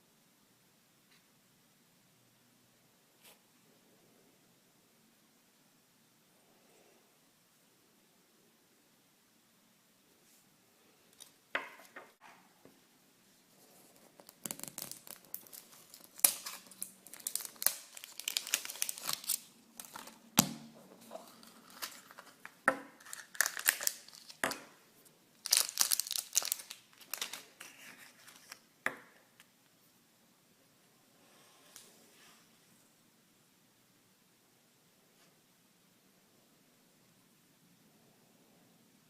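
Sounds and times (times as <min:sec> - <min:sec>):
wrapper crinkling and tearing: 0:13.9 - 0:20.4, 0:21.0 - 0:24.6, 0:25.4 - 0:28.6.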